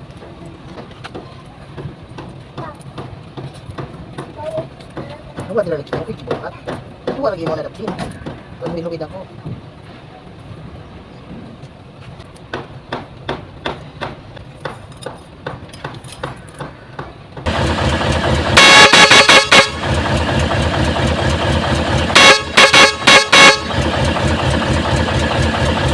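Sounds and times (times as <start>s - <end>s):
engine running: 17.4s - 25.9s
vehicle air horn blasts: 18.5s - 20.0s, 22.1s - 23.9s.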